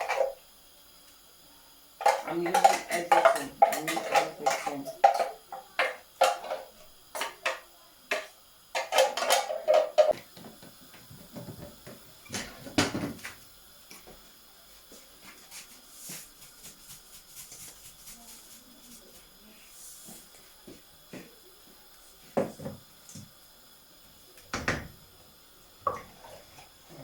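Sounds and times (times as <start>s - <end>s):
spoon scraping cooking pot: 2.0s - 7.5s
faint handling sounds: 13.9s - 22.4s.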